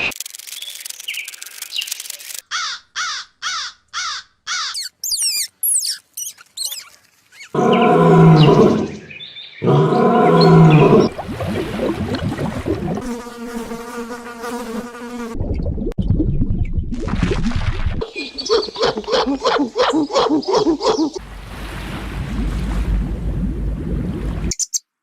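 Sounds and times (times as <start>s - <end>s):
long low animal calls: 7.5s - 11.2s.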